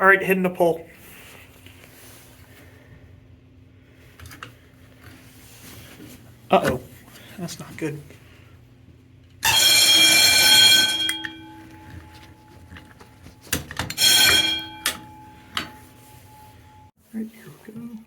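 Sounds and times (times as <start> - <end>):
fire alarm bursts: 9.4 - 16.9
ringing tone: 9.4 - 16.9.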